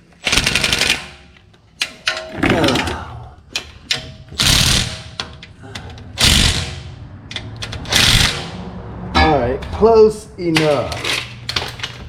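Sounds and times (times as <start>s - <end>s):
power wrench running bolts: 0.2s - 2.4s, 3.6s - 6.7s, 7.3s - 8.6s.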